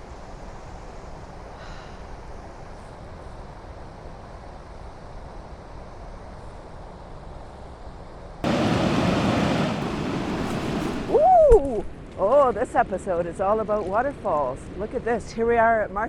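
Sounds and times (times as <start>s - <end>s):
river water rushing over rapids: 8.4s - 11.2s
roar of falling water: 8.4s - 11.2s.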